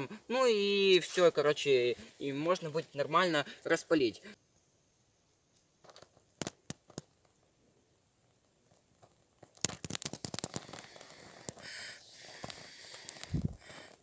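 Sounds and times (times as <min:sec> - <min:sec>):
twigs crackling and snapping: 0:05.6 - 0:07.4, 0:08.3 - 0:14.0.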